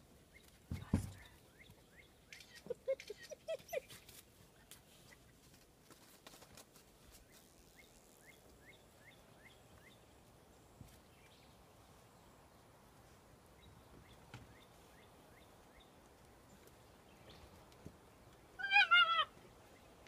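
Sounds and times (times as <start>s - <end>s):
puppy squeaking and whimpering: 2.6s - 4.0s.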